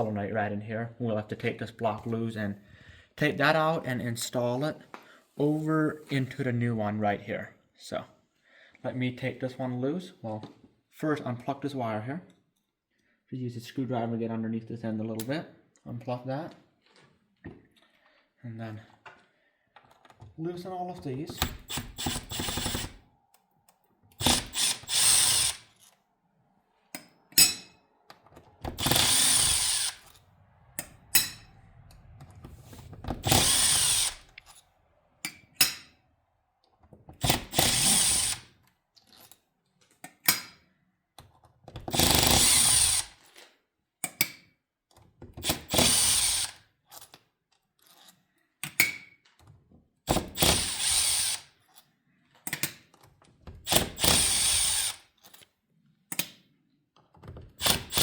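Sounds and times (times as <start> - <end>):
power driver spinning out bolts: 21.3 - 23.0, 24.2 - 26.0, 28.3 - 31.4, 32.8 - 34.6.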